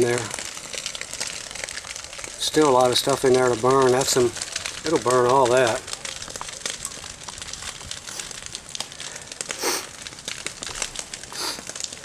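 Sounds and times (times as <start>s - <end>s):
brush fire crackling: 0.0s - 12.0s
fire hissing rushes: 7.4s - 12.0s.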